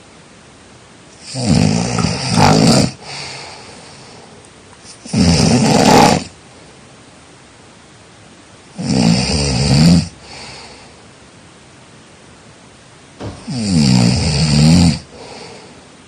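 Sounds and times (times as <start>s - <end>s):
person snoring: 1.2s - 3.7s, 5.0s - 6.3s.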